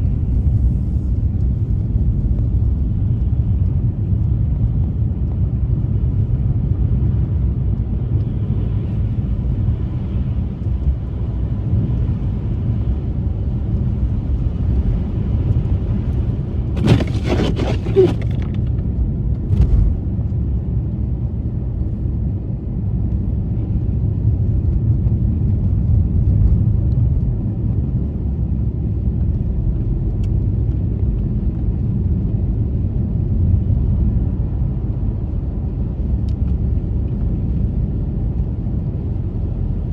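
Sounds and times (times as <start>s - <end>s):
car engine and tyres rumbling: 0.0s - 25.2s.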